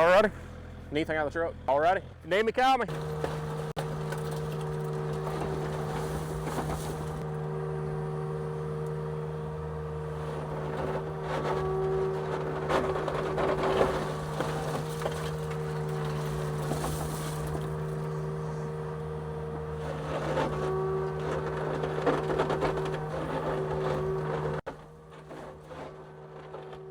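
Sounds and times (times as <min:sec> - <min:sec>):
excavator diesel engine running: 0:02.9 - 0:26.9
concrete slab cracking: 0:10.7 - 0:18.6.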